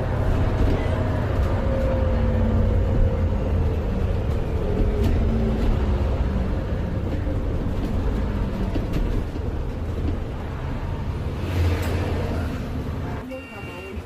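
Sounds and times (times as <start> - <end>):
bus engine and road rumble: 0.0 - 14.0.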